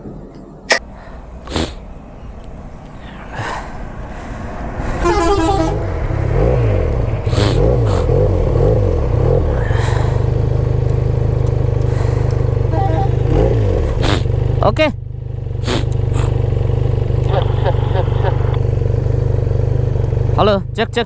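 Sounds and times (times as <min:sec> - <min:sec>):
horn beep: 0:00.7 - 0:07.8, 0:12.6 - 0:13.6
motorcycle engine revving and idling: 0:00.8 - 0:21.0.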